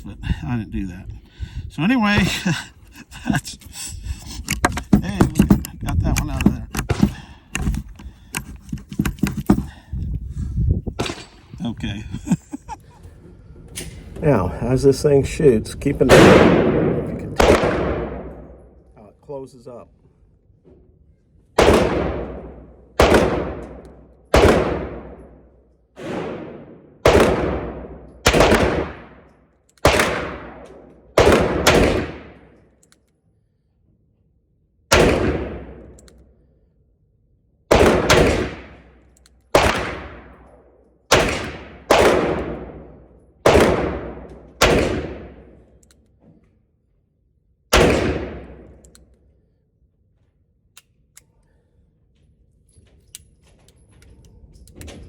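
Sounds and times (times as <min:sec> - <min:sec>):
revolver gunshots: 0:11.0 - 0:11.5, 0:16.0 - 0:18.8, 0:21.6 - 0:32.6, 0:34.9 - 0:36.0, 0:37.7 - 0:45.7, 0:47.7 - 0:48.8.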